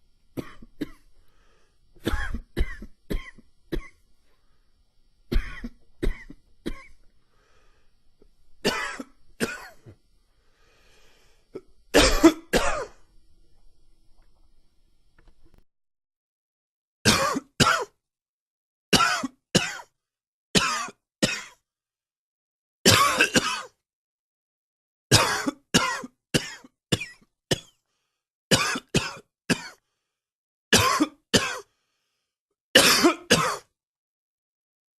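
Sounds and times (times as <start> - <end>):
man coughing wheezily: 2.0 - 4.0, 8.7 - 10.0, 12.0 - 13.0, 17.1 - 17.9, 19.0 - 19.9, 22.9 - 23.8, 25.1 - 27.8, 30.8 - 31.7, 32.8 - 33.7.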